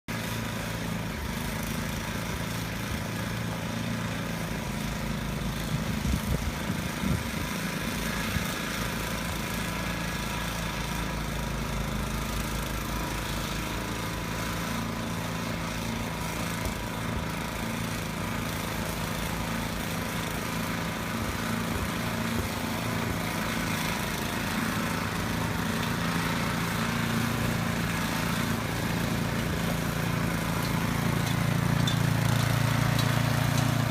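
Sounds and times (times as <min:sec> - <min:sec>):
snowblower engine running: 0:00.1 - 0:33.9.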